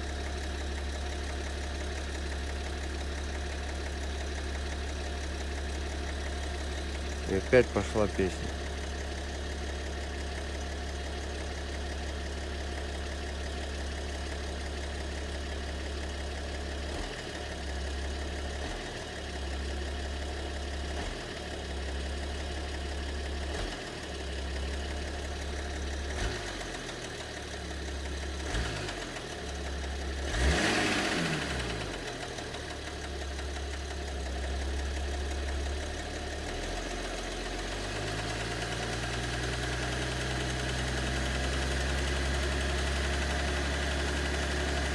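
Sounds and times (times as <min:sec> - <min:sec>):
diesel engine idling: 0:00.0 - 0:44.9
engine knocking: 0:00.0 - 0:44.9.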